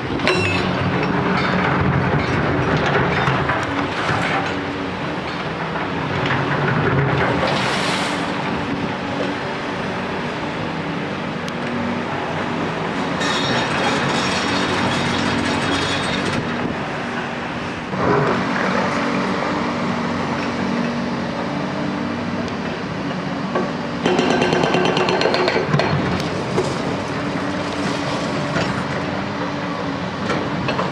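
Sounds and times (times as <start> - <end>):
clanking and scraping rubble: 0.0 - 9.4, 12.8 - 16.8, 24.0 - 30.9
loud clatter: 13.2 - 16.5.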